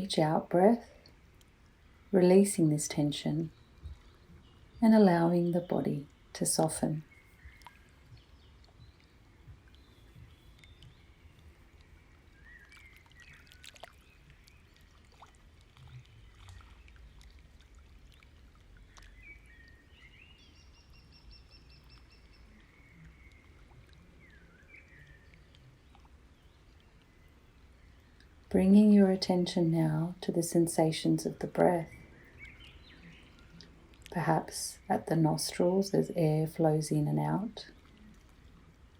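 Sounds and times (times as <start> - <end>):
faint bird chirps: 18.9 - 28.2.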